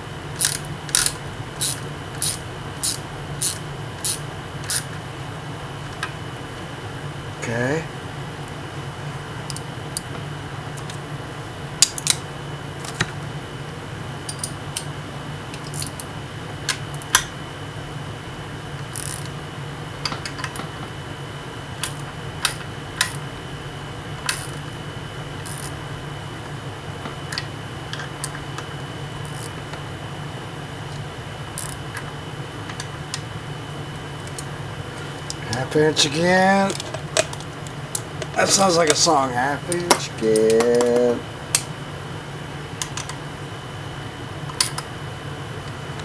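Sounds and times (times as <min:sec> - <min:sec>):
steady low hum: 0:00.0 - 0:46.0.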